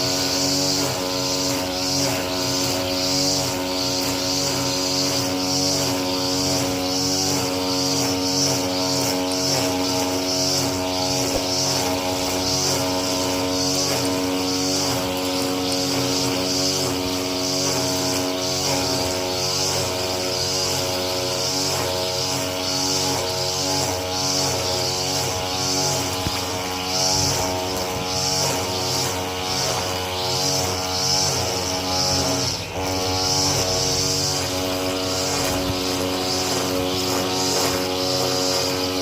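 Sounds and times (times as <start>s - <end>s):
high whirring hiss of cutting: 0.0s - 39.0s
lawn mower engine running: 0.0s - 39.0s.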